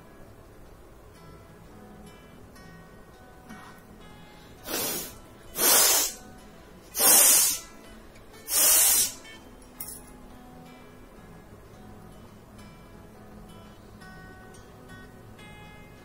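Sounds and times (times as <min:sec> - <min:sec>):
faint guitar music: 0:00.0 - 0:16.0
woman blowing her nose: 0:04.6 - 0:06.2, 0:06.9 - 0:07.7, 0:08.5 - 0:09.2.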